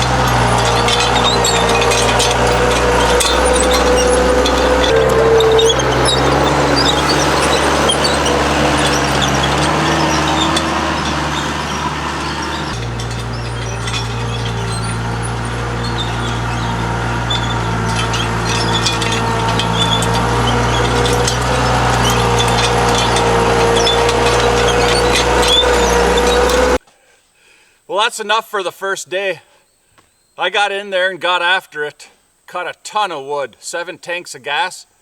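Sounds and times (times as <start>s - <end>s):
loader engine running: 0.0s - 26.8s.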